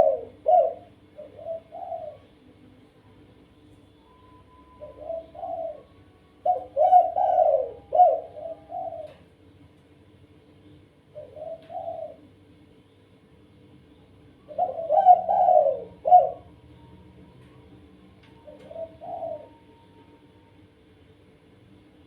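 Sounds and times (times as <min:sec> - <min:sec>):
dove cooing: 0:00.0 - 0:02.4, 0:04.6 - 0:09.4, 0:11.1 - 0:12.4, 0:14.4 - 0:16.8, 0:18.3 - 0:20.0
faint steady hum: 0:00.0 - 0:22.0.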